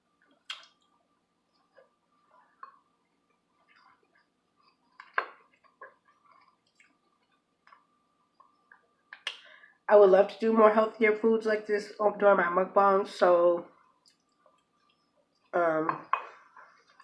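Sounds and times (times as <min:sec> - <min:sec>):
person chewing: 0:00.2 - 0:09.4
wet mouth clicks: 0:00.3 - 0:00.9, 0:08.4 - 0:09.5.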